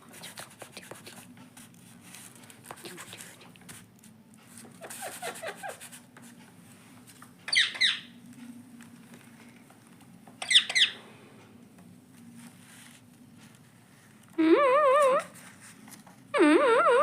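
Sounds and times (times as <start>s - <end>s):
parrot squawking: 7.5s - 8.2s, 10.4s - 11.0s, 14.4s - 15.3s, 16.4s - 17.0s
parrot warbling: 14.4s - 15.3s, 16.4s - 17.0s.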